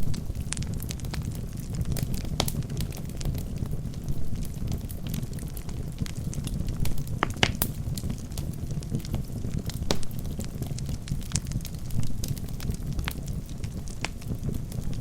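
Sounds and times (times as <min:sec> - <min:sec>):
fire flames rushing: 0:00.0 - 0:15.0
wood crackling and popping: 0:00.0 - 0:15.0.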